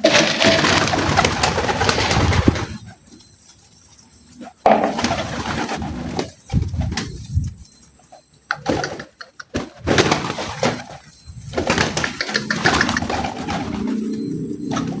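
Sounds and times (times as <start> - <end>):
rustling noise: 0.0 - 8.5, 9.7 - 15.0
pigeons cooing: 4.4 - 7.7, 8.5 - 15.0.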